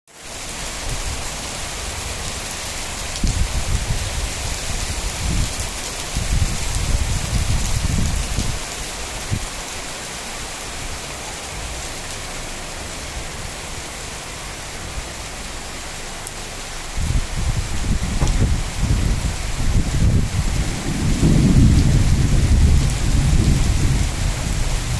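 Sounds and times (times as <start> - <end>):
rain pattering: 0.1 - 24.9
low rumbling: 15.7 - 24.9.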